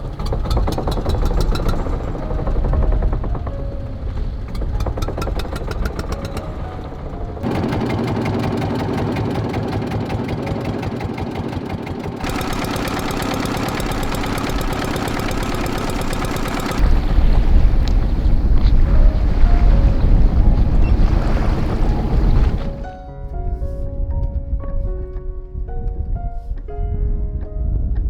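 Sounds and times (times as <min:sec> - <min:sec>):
small engine running: 0:00.0 - 0:03.5, 0:04.5 - 0:18.7, 0:19.8 - 0:22.8
low rumble: 0:00.0 - 0:05.4, 0:14.5 - 0:23.0.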